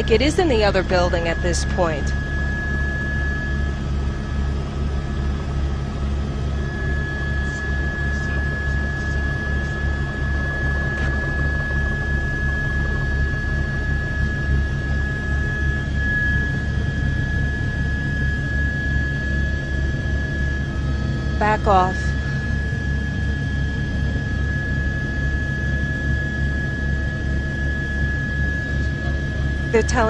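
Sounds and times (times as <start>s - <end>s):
helicopter rotor throbbing: 0.0s - 30.0s
high-pitched engine tone: 0.0s - 30.0s.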